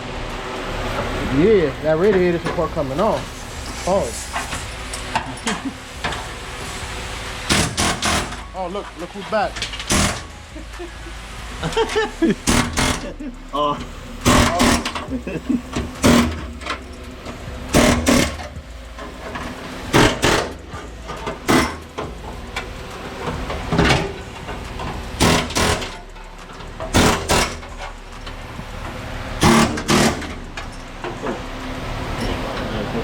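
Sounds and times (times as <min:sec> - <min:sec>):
power tool bursts: 0:14.2 - 0:15.0, 0:17.7 - 0:18.5, 0:25.2 - 0:26.0, 0:29.4 - 0:30.3.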